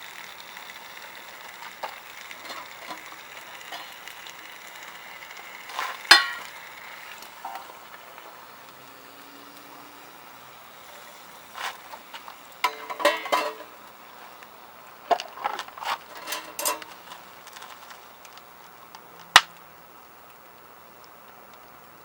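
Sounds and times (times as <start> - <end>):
sharp crack: 1.4 - 8.8, 15.1 - 19.7
metal cookware clinking and clattering: 1.5 - 4.3, 5.7 - 7.9, 12.6 - 13.8, 15.1 - 17.2.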